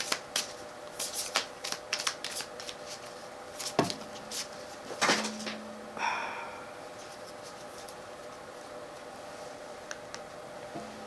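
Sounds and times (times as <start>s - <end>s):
cards being shuffled: 0.0s - 4.5s.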